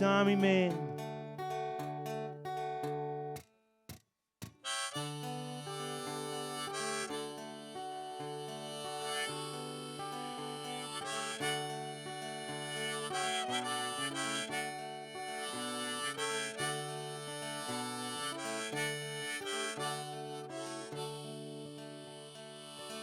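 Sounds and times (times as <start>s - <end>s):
strummed acoustic guitar: 0.0s - 23.0s
harmonica melody: 4.6s - 23.0s.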